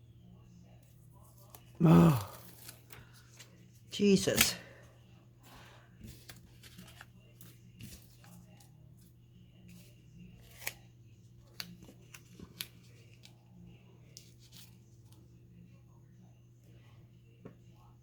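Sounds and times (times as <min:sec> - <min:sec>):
paper rustling: 0:00.9 - 0:03.7, 0:05.6 - 0:08.7.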